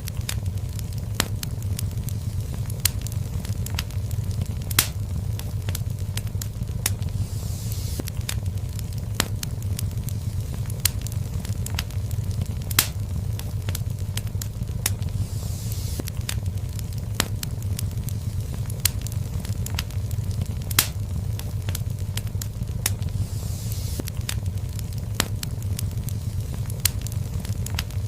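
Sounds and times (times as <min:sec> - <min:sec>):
fire crackling and popping: 0:00.0 - 0:28.0
fire hissing: 0:00.0 - 0:28.0
low rumble of flames: 0:00.0 - 0:28.0.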